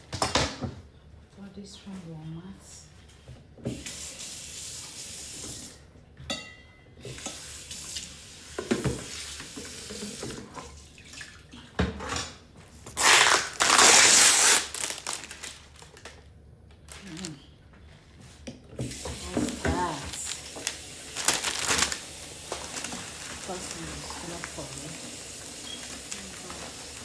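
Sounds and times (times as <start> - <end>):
pots and utensils clinking: 6.2 - 7.6.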